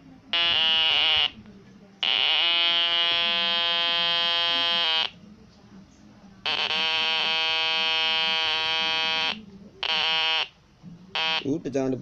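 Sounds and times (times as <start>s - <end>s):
buzzy electronic toy tone: 0.4s - 1.4s, 2.0s - 5.1s, 6.5s - 10.5s.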